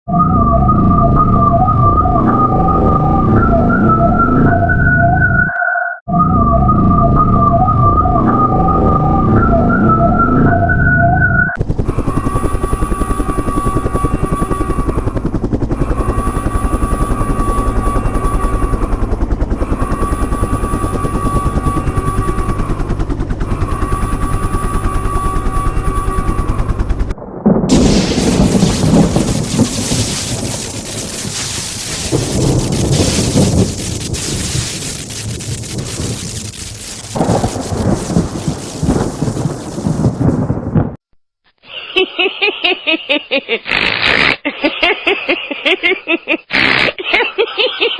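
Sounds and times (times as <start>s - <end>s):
fast pulsing chop: 11.6s - 38.8s.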